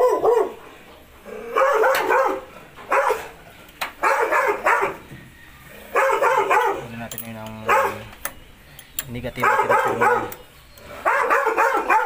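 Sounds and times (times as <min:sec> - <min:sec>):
dog barking: 0:00.0 - 0:00.6, 0:01.5 - 0:03.3, 0:04.0 - 0:05.0, 0:05.9 - 0:06.9, 0:07.6 - 0:08.0, 0:09.4 - 0:10.4, 0:11.0 - 0:12.0.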